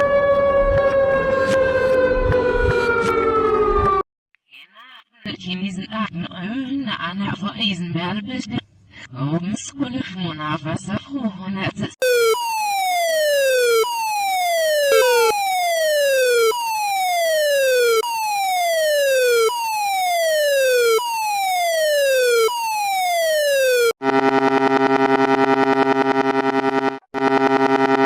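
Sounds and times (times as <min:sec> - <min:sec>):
reversed electronic alarm siren: 0:00.0 - 0:04.0, 0:12.0 - 0:28.0
buzzy electronic chord: 0:14.8 - 0:15.5.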